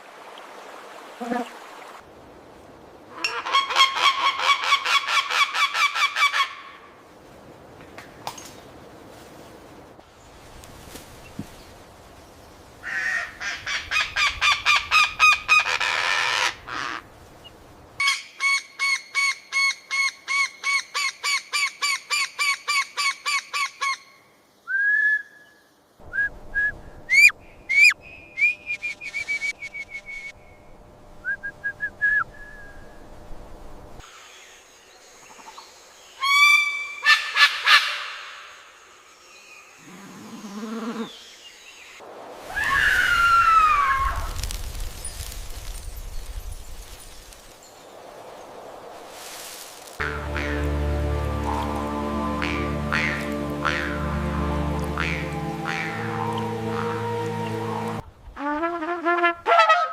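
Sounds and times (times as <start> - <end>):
birds calling: 50.0 - 58.0.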